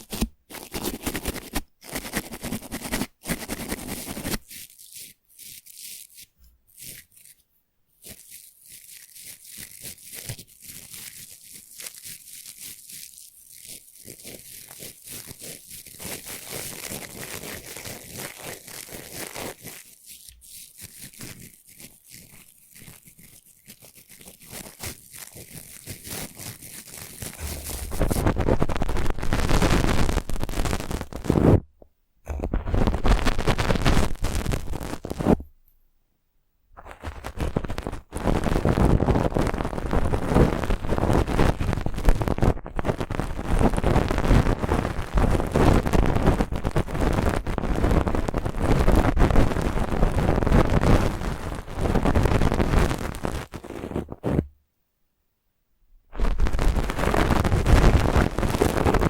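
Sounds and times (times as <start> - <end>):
brush bristles scratching: 0.0 - 7.4, 8.0 - 29.5, 36.8 - 43.1.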